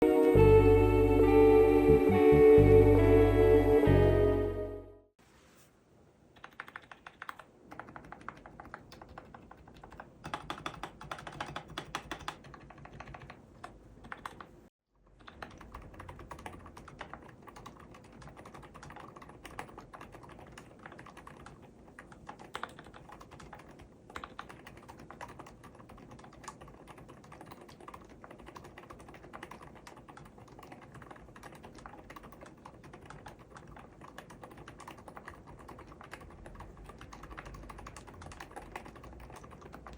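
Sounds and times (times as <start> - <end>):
fast typing on mechanical keyboard: 6.4 - 14.5, 15.1 - 39.9.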